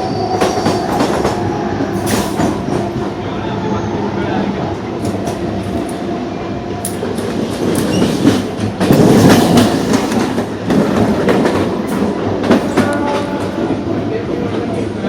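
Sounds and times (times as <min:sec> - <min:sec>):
train running gear rumble: 0:00.0 - 0:03.3, 0:04.5 - 0:15.0
train wheels clicking over rail joints: 0:00.4 - 0:02.9, 0:06.8 - 0:13.7.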